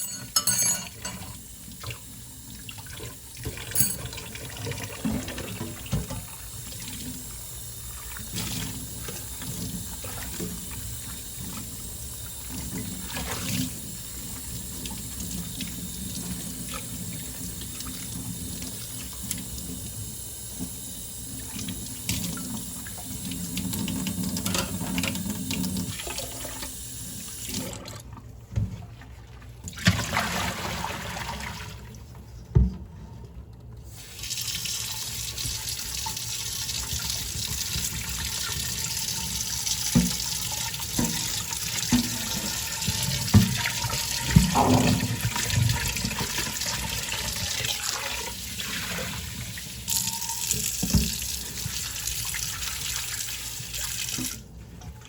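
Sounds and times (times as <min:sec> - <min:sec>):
dishes clinking: 0:00.0 - 0:01.4, 0:03.7 - 0:04.3
tap running into sink: 0:39.7 - 0:46.4, 0:49.9 - 0:51.8.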